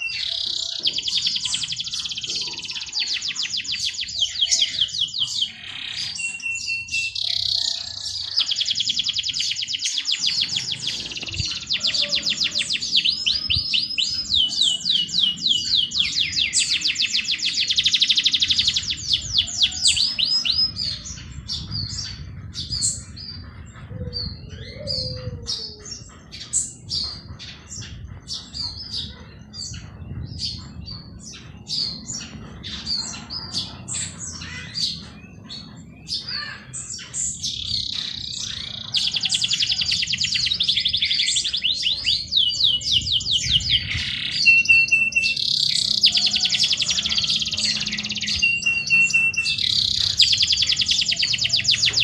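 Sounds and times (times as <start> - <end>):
songbirds trilling: 0.0 - 52.0.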